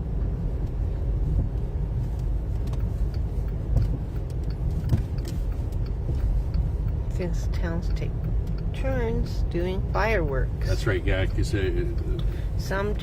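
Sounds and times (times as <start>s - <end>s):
car engine and road rumble: 0.0s - 13.0s
light clicks and knocks: 0.2s - 9.7s.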